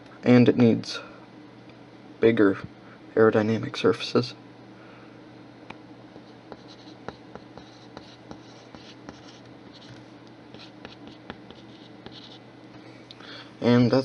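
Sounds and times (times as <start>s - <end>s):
pen scratching on paper: 6.5s - 12.4s.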